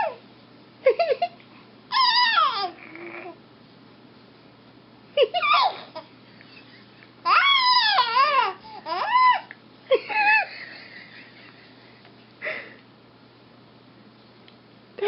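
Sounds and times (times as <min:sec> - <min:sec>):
baby squeaking and cooing: 0:01.9 - 0:03.4, 0:05.4 - 0:06.1, 0:07.2 - 0:09.5.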